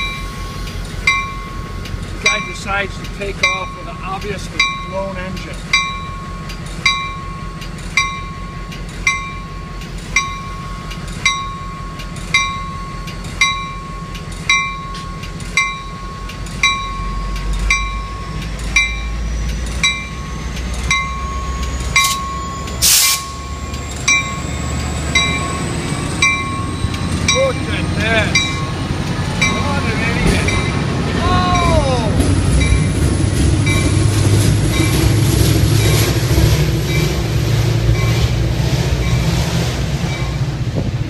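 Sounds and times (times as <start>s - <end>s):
locomotive bell ringing: 0.0s - 40.8s
diesel locomotive engine rumble: 0.0s - 41.0s
sharp hiss: 22.8s - 23.4s.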